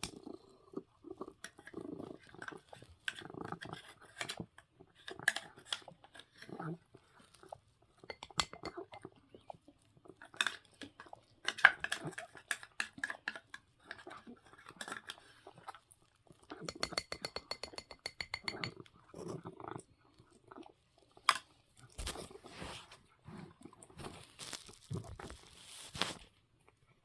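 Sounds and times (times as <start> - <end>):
cat chewing crunchy food: 0.0 - 8.1, 19.0 - 26.9.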